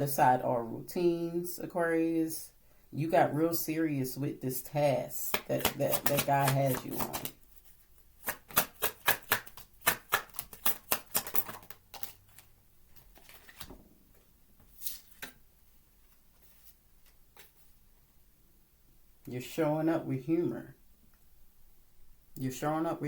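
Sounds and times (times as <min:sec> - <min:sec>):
card deck shuffling: 0:05.3 - 0:13.8, 0:14.7 - 0:15.4.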